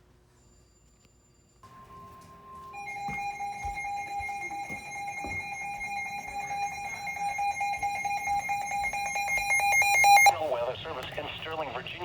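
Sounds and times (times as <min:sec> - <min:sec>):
steady single tone: 0:01.6 - 0:10.3
pulsing electronic alarm: 0:01.6 - 0:10.4.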